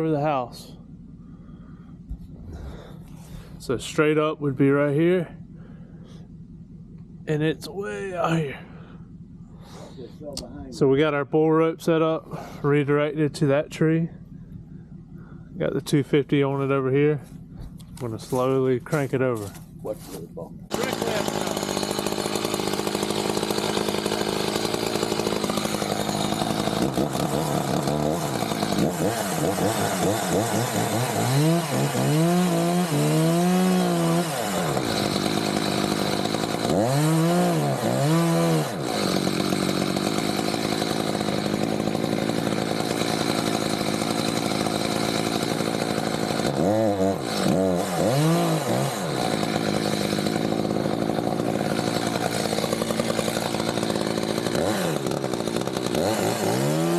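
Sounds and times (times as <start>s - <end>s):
chainsaw engine revving: 17.7s - 56.9s.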